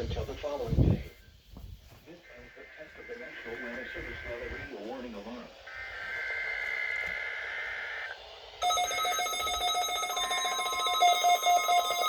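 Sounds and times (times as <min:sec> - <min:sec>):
buzzy electronic alarm beeping: 0:05.7 - 0:12.0.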